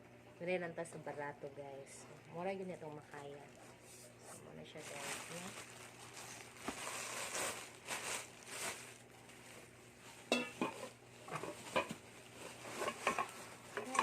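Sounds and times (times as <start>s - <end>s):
packaging rustling: 4.6s - 9.7s
pots and lids clinking: 10.3s - 12.0s, 12.8s - 14.0s.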